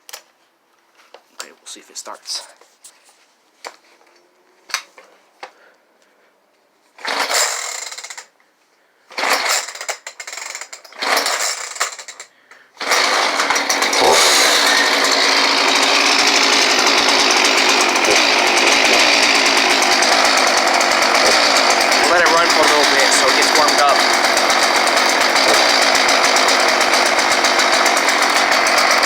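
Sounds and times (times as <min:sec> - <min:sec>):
chainsaw running: 0:07.0 - 0:08.3, 0:09.1 - 0:29.0
chainsaw starter cord pulls: 0:07.0 - 0:08.3, 0:09.1 - 0:29.0.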